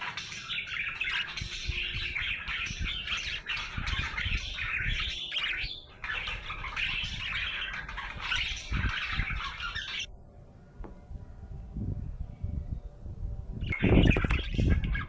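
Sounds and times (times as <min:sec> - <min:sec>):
budgerigar chattering and warbling: 0:00.0 - 0:10.1.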